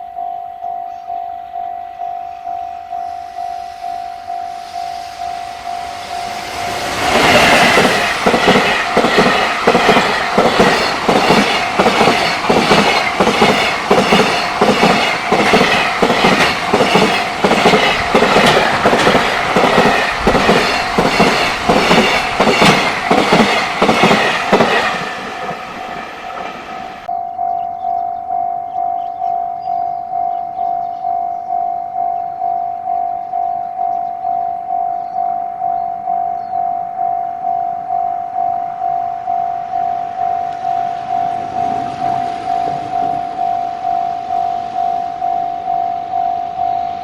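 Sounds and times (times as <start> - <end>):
crossing warning bell: 0.0 - 47.0
train wheels clattering over rail joints: 7.0 - 27.1.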